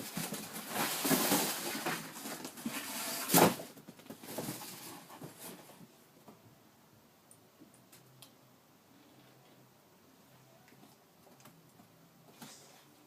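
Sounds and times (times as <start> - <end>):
dog rustling in cardboard box: 0.0 - 5.8.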